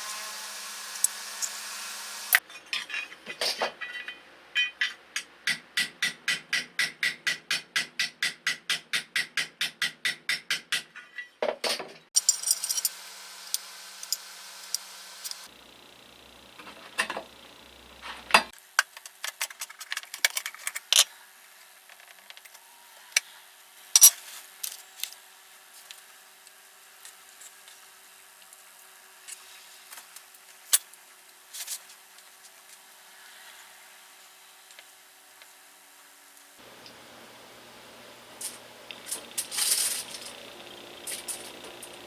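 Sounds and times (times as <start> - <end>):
metal tools clinking on workbench: 12.2 - 15.5.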